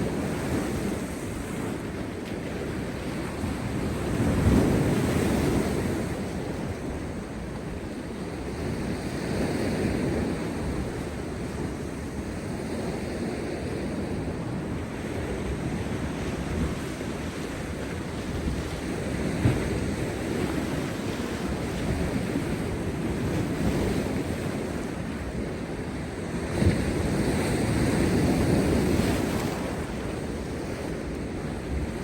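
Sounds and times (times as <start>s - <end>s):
sea surf breaking over rocks: 0.0s - 32.0s
wind buffeting microphone: 0.0s - 32.0s.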